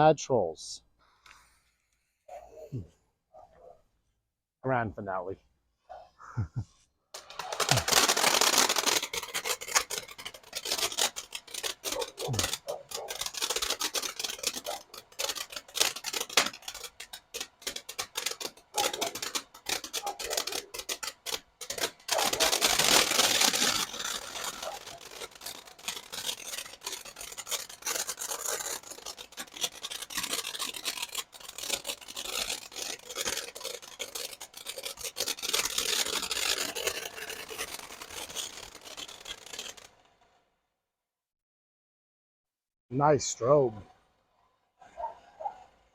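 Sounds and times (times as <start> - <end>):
firework crackling pops: 7.1 - 40.4
firework hissing: 7.2 - 40.0.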